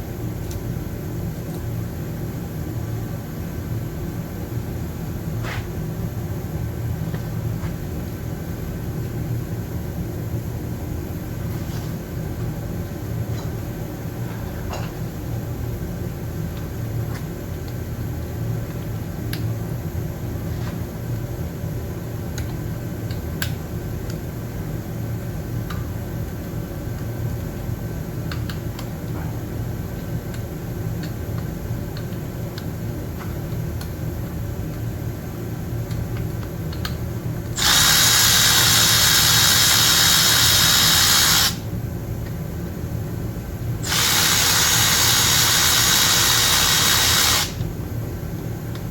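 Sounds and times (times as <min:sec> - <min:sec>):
power tool running: 0:37.6 - 0:41.6, 0:43.8 - 0:47.6.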